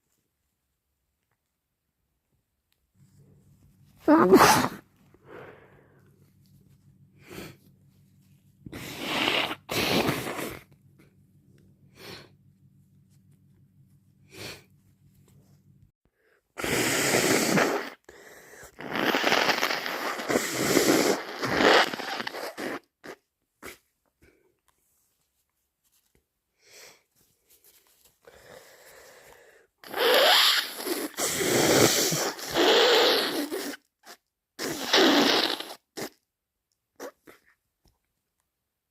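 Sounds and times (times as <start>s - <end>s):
person blowing nose into tissue: 4.1s - 5.6s, 7.2s - 7.7s, 8.7s - 10.8s, 11.9s - 12.3s, 14.2s - 14.7s, 16.6s - 23.9s, 26.6s - 36.2s, 37.0s - 37.6s
person sniffling: 8.7s - 10.7s.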